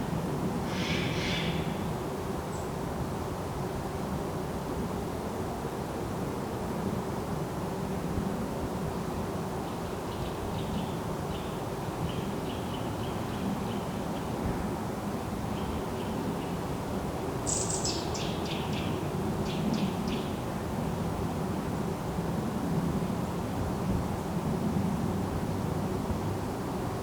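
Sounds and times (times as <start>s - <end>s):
small birds chirping faintly: 17.4s - 20.4s.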